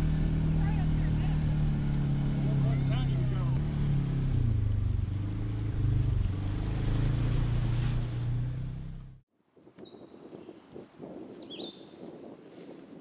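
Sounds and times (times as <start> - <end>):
vehicle engine humming: 0.0 - 9.2
faint bird chirp: 9.6 - 10.6.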